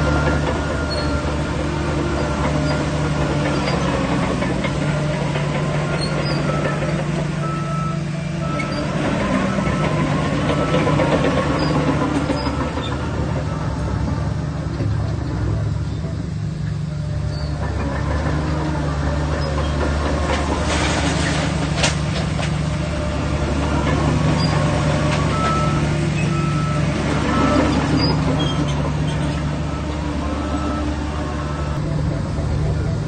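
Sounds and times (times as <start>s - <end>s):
bulldozer diesel engine running: 0.0s - 33.0s
short high squeaks: 17.2s - 17.7s, 27.4s - 29.4s.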